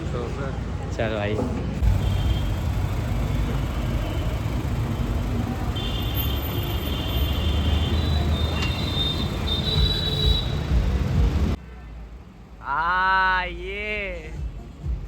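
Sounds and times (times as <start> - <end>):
traffic noise: 0.0 - 15.0
vehicle engine rumble: 1.3 - 11.6.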